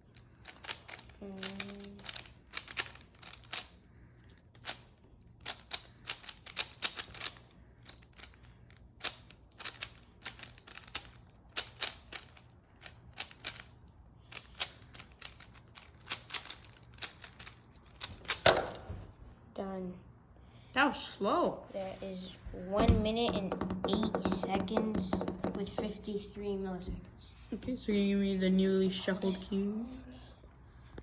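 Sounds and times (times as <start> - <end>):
puzzle cube layers clicking: 0.4 - 3.8, 4.5 - 18.6.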